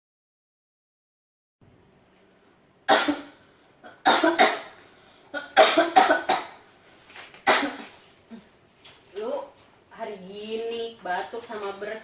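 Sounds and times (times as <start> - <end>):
person coughing hard: 2.9 - 4.8, 5.4 - 6.6, 7.4 - 7.9.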